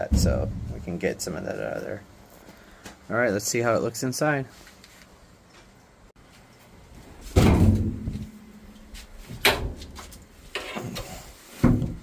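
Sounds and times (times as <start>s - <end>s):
heavy clunks and knocks: 0.0s - 1.1s, 7.4s - 8.3s.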